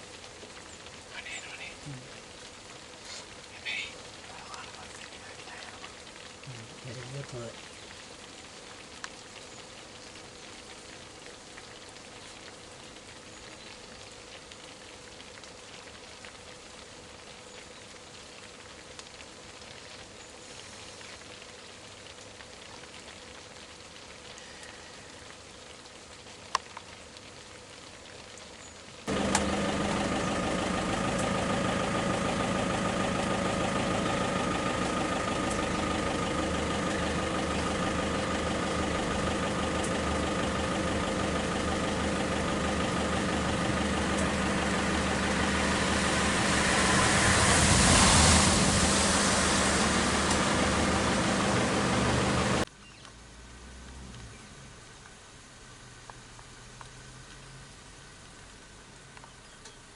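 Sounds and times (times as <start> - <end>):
faint hiss: 0.0 - 59.9
vehicle engine idling loudly: 29.1 - 52.7.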